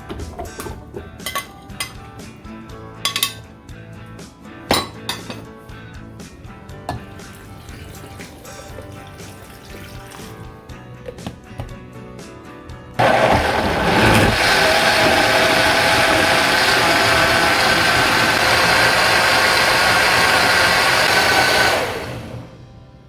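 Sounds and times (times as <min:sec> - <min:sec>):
blender running: 0:13.0 - 0:22.6.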